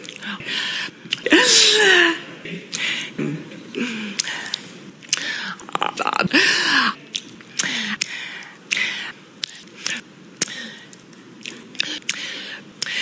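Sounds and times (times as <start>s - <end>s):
heavy breaths: 0.0s - 13.0s
wet lip smacks and mouth clicks: 4.2s - 6.1s, 7.1s - 13.0s.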